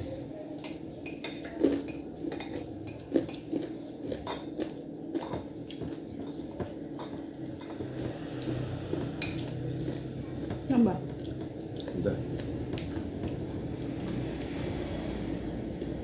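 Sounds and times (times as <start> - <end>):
cutlery clinking on a plate: 6.2 - 7.9.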